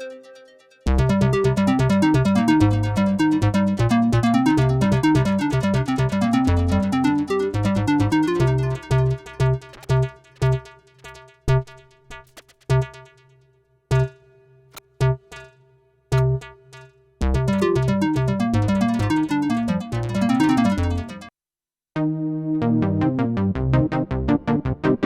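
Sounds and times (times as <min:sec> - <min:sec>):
synthesizer playing: 0:01.0 - 0:10.0, 0:17.4 - 0:21.3.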